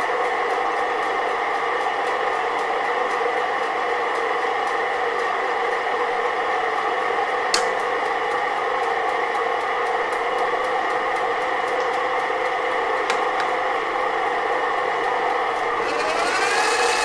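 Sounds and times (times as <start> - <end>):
lathe motor whirring: 11.2 - 17.0.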